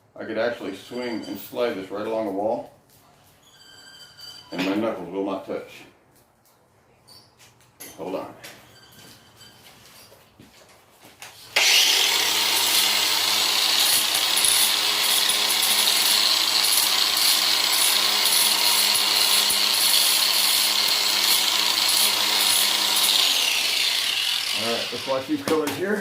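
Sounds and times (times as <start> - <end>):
electric grinder on steel: 11.5 - 25.6.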